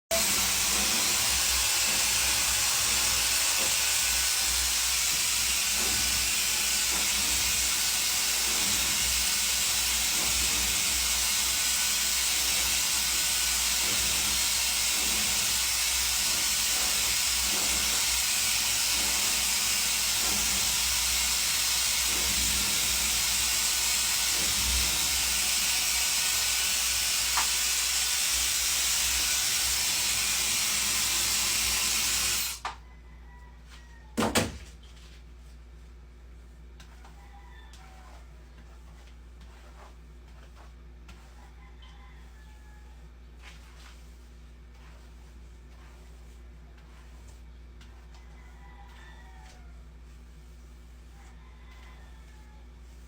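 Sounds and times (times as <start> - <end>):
hair dryer blowing: 0.1 - 32.7.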